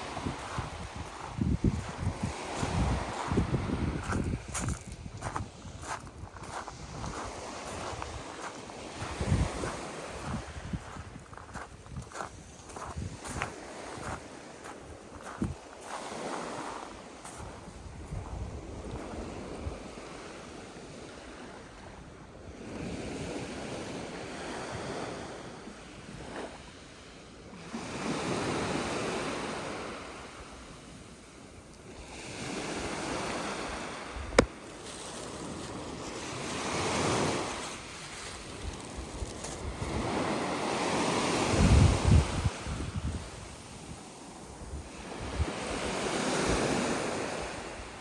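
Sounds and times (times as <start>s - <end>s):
wind buffeting microphone: 0.0s - 20.3s, 32.2s - 48.0s
waves washing onto pebble beach: 0.0s - 21.6s, 27.6s - 48.0s.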